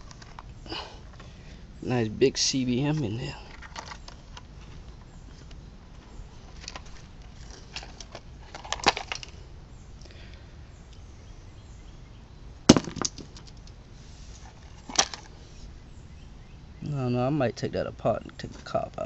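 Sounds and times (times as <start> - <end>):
knocks and clicks of breaking plastic: 12.7 - 13.4.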